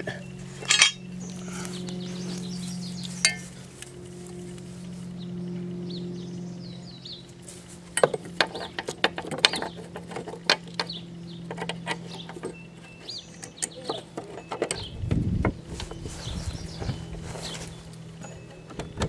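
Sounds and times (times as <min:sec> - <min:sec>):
birds chirping: 0:00.0 - 0:19.0
steady low hum: 0:00.0 - 0:19.0
metal tools clinking: 0:00.6 - 0:01.1, 0:03.2 - 0:03.6, 0:11.5 - 0:14.9, 0:17.9 - 0:19.0.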